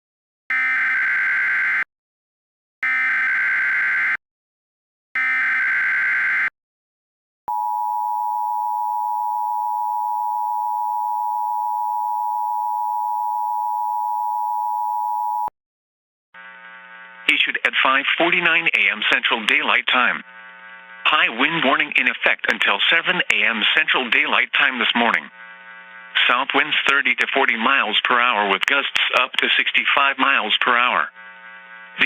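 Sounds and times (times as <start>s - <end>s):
long steady attention tone: 7.5s - 15.5s.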